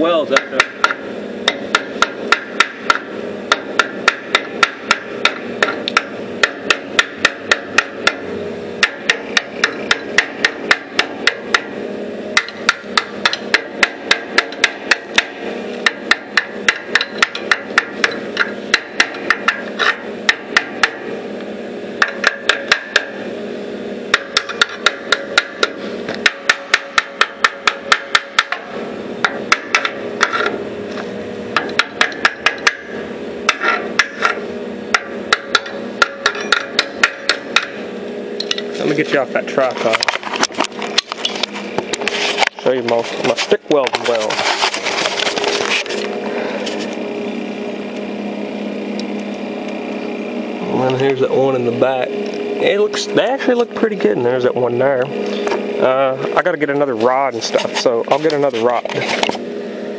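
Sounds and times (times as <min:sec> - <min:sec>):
steady low hum: 0:00.0 - 0:59.9
hammer striking steel: 0:00.3 - 0:21.1, 0:22.0 - 0:23.2, 0:24.1 - 0:30.6, 0:31.6 - 0:38.7.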